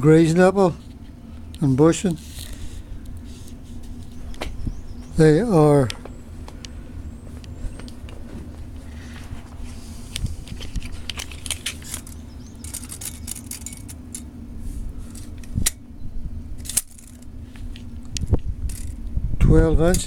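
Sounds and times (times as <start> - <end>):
steady low hum: 0.0 - 20.0
small objects clicking and rattling: 10.5 - 14.3, 16.6 - 17.3, 18.7 - 19.0.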